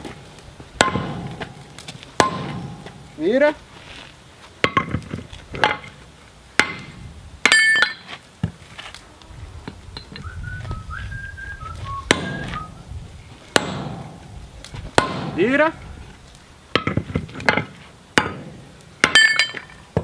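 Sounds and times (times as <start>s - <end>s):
sledgehammer striking steel on anvil: 0.8s - 3.2s, 6.6s - 8.2s, 12.1s - 12.6s, 13.5s - 14.4s, 15.0s - 15.7s, 16.7s - 20.0s
person whistling: 10.2s - 12.9s.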